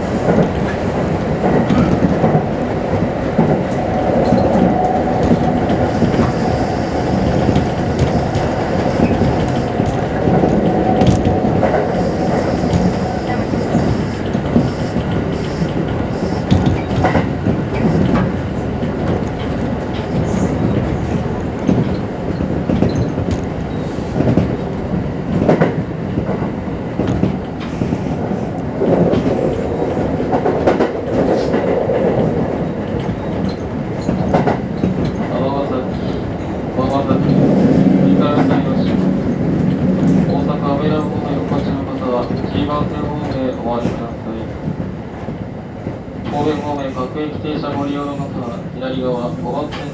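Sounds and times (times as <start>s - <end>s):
train wheels rumbling on rail: 0.0s - 49.9s
sharp track clicks: 0.2s - 32.0s.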